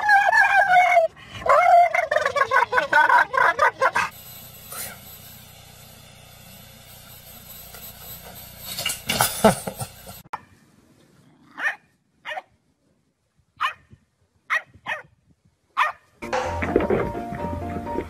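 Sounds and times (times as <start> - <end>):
dog barking: 11.6 - 12.5, 13.6 - 13.9, 14.5 - 15.1, 15.8 - 16.1.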